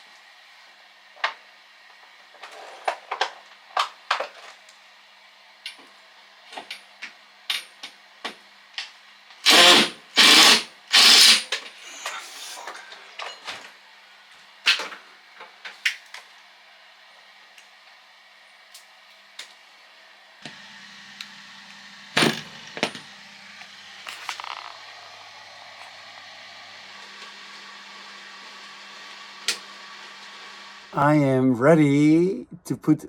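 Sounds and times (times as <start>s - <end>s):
short loud bursts: 9.4s - 11.5s.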